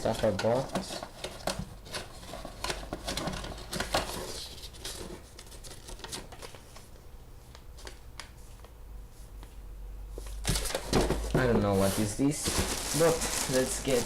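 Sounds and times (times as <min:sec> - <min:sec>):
cardboard packaging rustling: 0:10.4 - 0:14.0.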